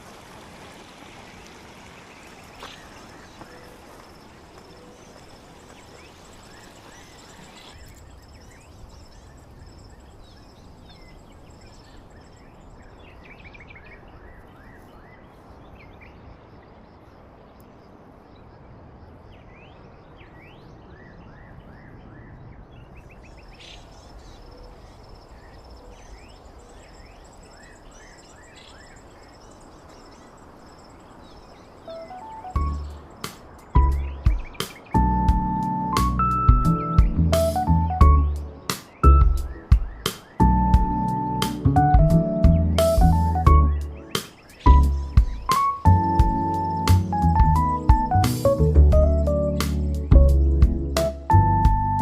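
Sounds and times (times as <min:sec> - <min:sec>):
small birds chirping: 0:00.6 - 0:52.0
music: 0:31.9 - 0:52.0.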